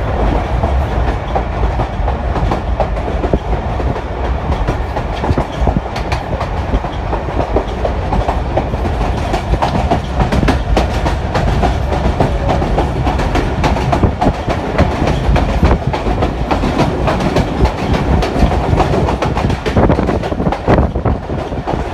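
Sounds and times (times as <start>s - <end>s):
train rumble: 0.0s - 21.9s.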